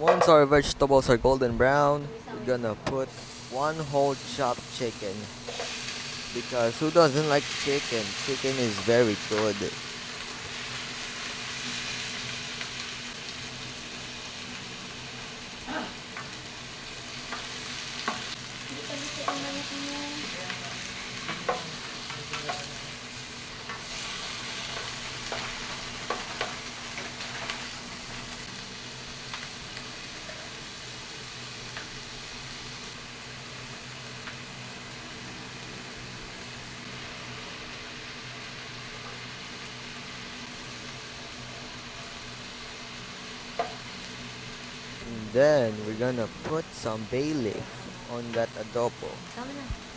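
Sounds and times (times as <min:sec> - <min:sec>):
chicken sizzling in hot oil: 0:03.1 - 0:49.9.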